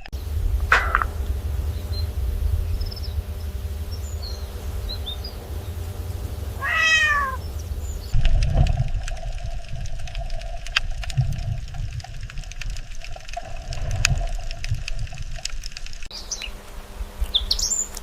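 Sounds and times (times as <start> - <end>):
low rumble: 0.0 - 16.1
animal call: 0.7 - 2.1, 6.6 - 8.0
scattered clicks: 7.2 - 16.8.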